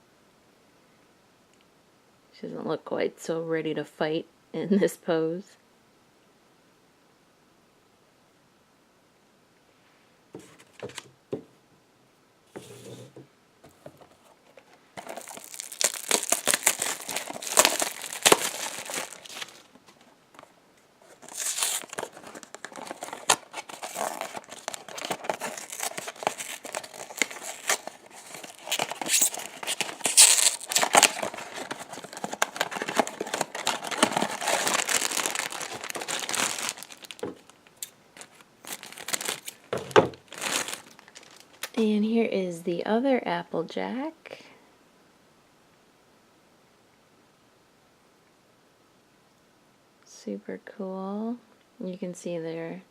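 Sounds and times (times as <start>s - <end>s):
wrapper crinkling and tearing: 14.4s - 41.8s.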